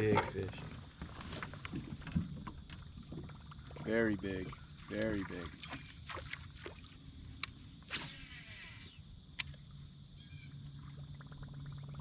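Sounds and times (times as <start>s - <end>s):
water splashing: 3.0s - 8.2s
sharp clicks: 9.4s - 9.6s.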